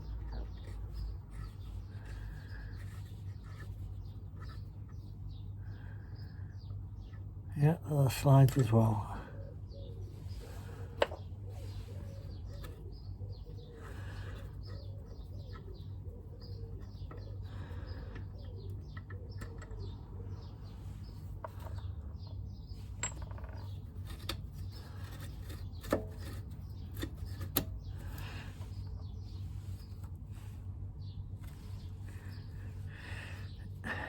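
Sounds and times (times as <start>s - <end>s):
small birds chirping: 0.0s - 34.0s
pigeon cooing: 9.2s - 20.7s.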